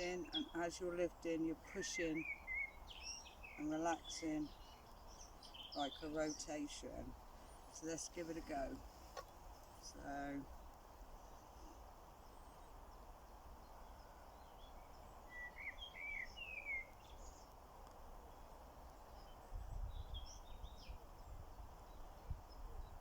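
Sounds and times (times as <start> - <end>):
birds chirping: 0.0 - 23.0
outdoor background: 0.0 - 23.0.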